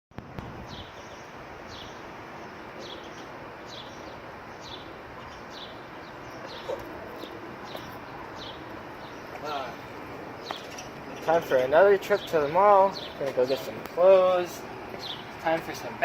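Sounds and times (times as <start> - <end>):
steady background hiss: 0.2 - 16.0
small bird chirping: 0.7 - 9.8, 10.4 - 11.5, 14.9 - 15.5.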